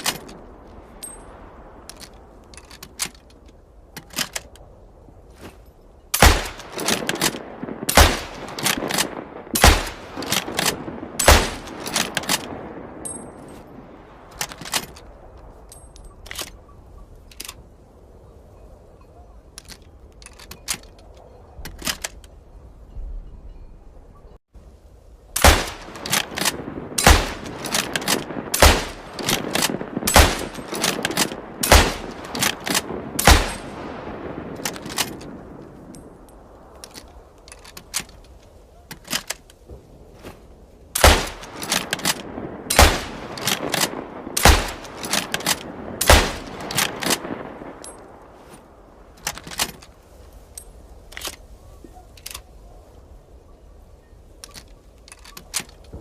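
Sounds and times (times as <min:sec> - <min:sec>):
rifle bolt clicks: 0:01.9 - 0:04.7, 0:06.2 - 0:13.2, 0:14.3 - 0:15.1, 0:25.4 - 0:33.8, 0:34.6 - 0:36.0, 0:36.8 - 0:39.6, 0:41.0 - 0:48.0, 0:49.2 - 0:50.0, 0:52.1 - 0:52.5, 0:54.4 - 0:56.0
rifle shots with echo: 0:06.2 - 0:13.5, 0:25.4 - 0:35.5, 0:41.0 - 0:48.0.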